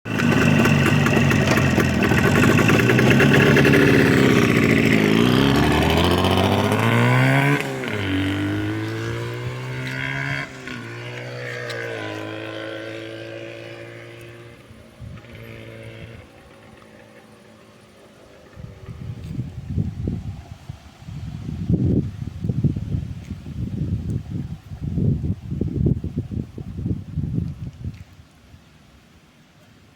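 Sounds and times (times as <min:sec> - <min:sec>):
motorcycle engine accelerating: 0:00.1 - 0:27.8.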